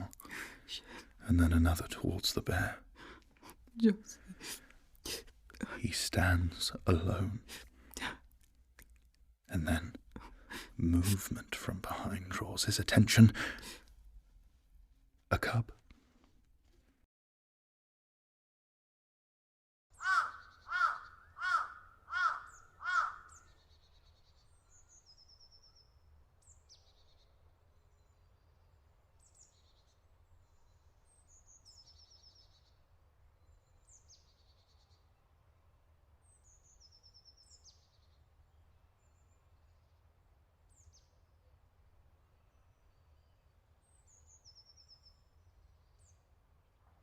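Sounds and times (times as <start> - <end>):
small birds chirping: 0.0 - 13.9, 19.9 - 35.6, 36.2 - 47.0
faint outdoor ambience: 0.0 - 17.0, 20.0 - 47.0
large bird calling harshly: 20.0 - 23.5.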